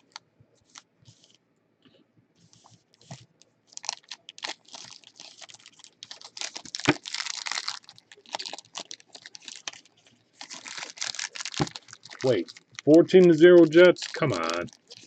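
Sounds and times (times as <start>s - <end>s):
foil wrappers crinkling and tearing: 3.0s - 15.0s.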